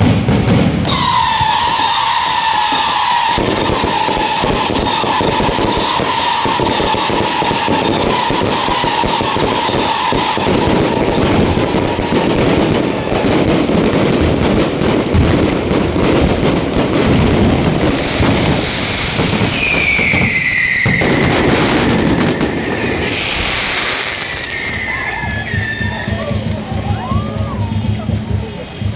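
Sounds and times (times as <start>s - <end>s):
fireworks crackling bangs: 0.0s - 28.9s
falling whistle tone: 0.9s - 10.9s, 19.1s - 27.6s.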